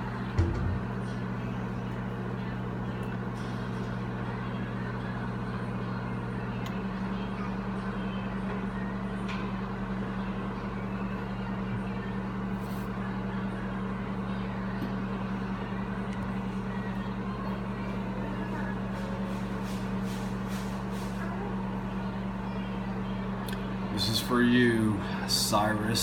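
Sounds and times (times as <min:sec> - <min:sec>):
fan whirring: 0:00.0 - 0:26.0
microwave oven humming: 0:00.0 - 0:26.0.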